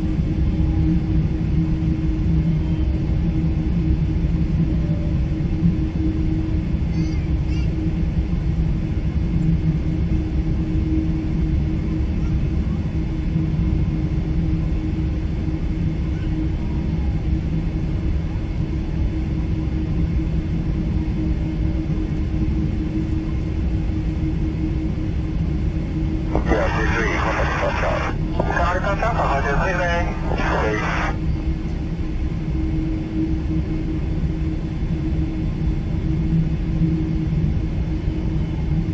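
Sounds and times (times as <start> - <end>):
constant low hum: 0.0 - 38.9
aircraft cabin rumble: 25.8 - 31.8.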